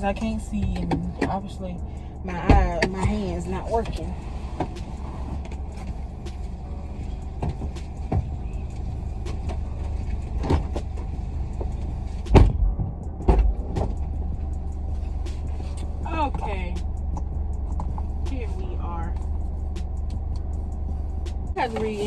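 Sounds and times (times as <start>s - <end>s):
car engine idling: 0.0s - 22.0s
knocks and clicks of handling: 7.2s - 14.0s.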